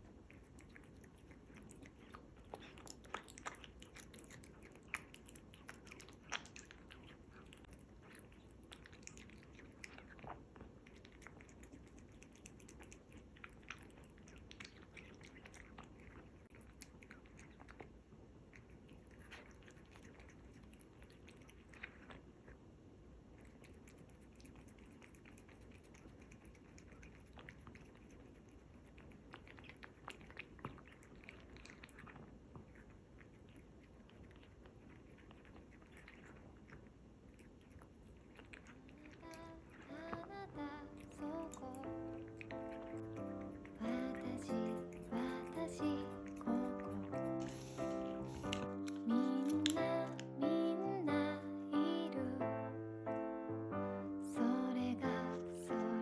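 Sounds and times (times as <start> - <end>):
cat chewing wet smacks: 0.0 - 50.6.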